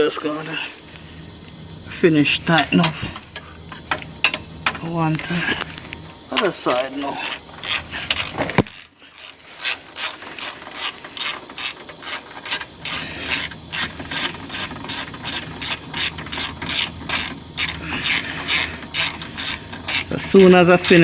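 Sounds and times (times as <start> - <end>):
ratchet wrench clicking: 5.5 - 21.0.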